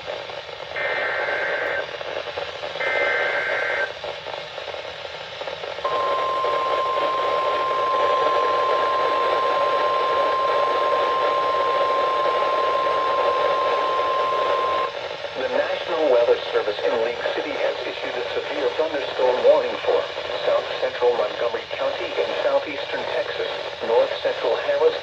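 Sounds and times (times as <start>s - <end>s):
receiver hiss: 0.0s - 25.0s
steady warning alarm tone: 2.8s - 3.9s, 5.8s - 14.9s.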